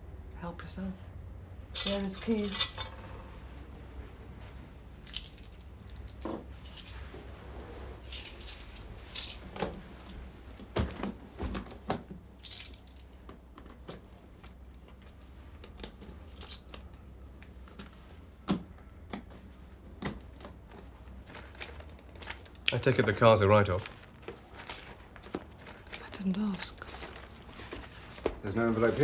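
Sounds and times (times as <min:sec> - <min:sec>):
low steady hum: 0:00.0 - 0:29.0
keys jangling: 0:01.8 - 0:03.0, 0:04.9 - 0:07.0, 0:08.0 - 0:09.5, 0:12.4 - 0:13.2.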